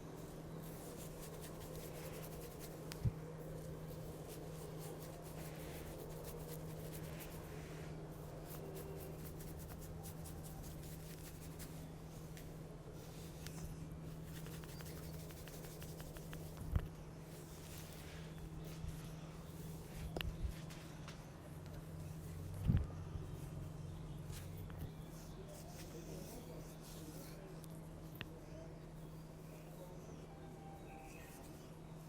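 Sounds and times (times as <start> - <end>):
steady low hum: 0.0 - 32.0
scratchy hair crackles: 0.3 - 7.6, 8.3 - 11.9, 14.1 - 16.6.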